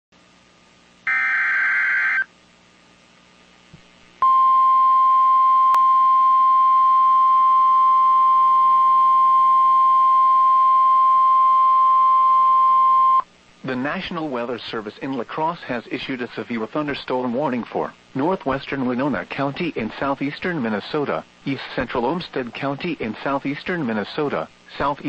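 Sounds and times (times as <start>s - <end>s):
buzzy digital data tones: 1.1s - 2.3s
steady alarm tone: 1.1s - 2.3s.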